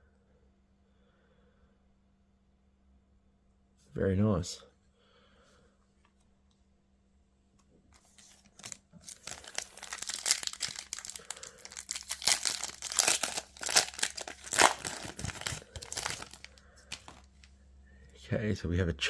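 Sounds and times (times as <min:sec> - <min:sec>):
plastic wrapper crinkling and tearing: 0:08.0 - 0:17.5.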